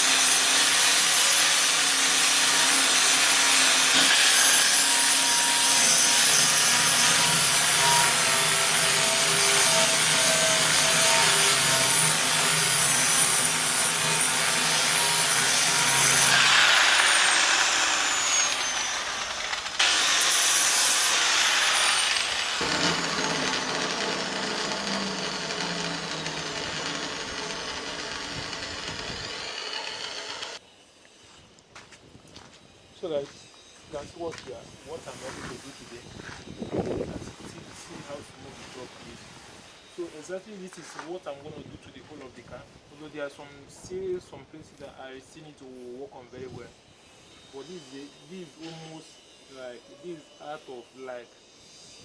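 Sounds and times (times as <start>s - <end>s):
grinder on metal: 0.0s - 30.7s, 45.6s - 52.0s.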